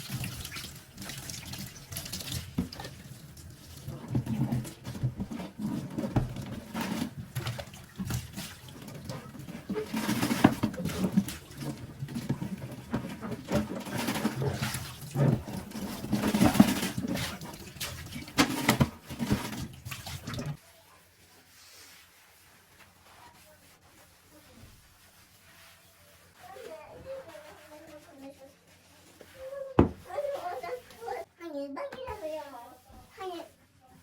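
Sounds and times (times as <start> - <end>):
water splashing: 7.3 - 20.6.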